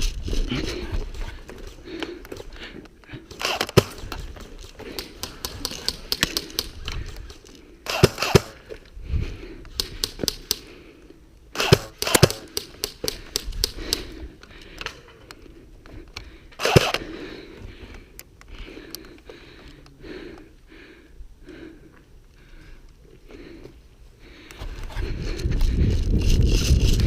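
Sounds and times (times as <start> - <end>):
airsoft guns firing: 3.3 - 8.6, 11.5 - 14.0, 16.6 - 17.1.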